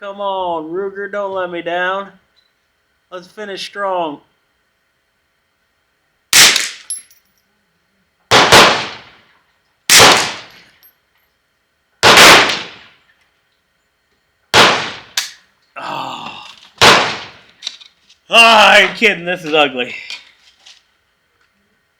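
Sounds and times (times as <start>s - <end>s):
rifle shots: 6.3s - 6.9s, 8.3s - 9.2s, 9.9s - 10.6s, 12.0s - 12.9s, 14.5s - 15.4s, 16.8s - 17.5s.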